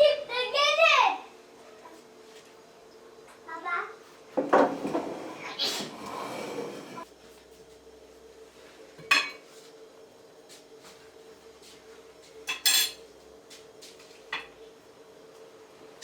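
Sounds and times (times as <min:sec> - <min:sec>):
dishes and utensils clinking: 0:09.0 - 0:09.4, 0:12.5 - 0:13.0.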